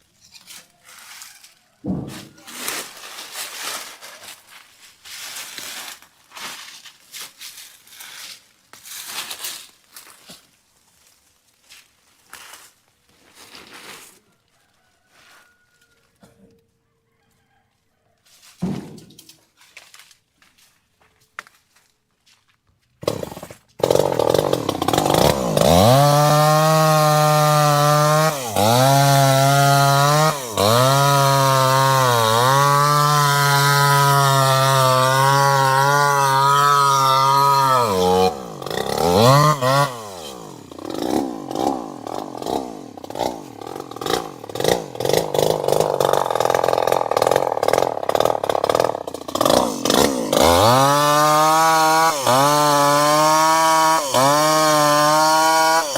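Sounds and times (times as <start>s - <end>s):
chainsaw engine revving: 23.0s - 55.9s.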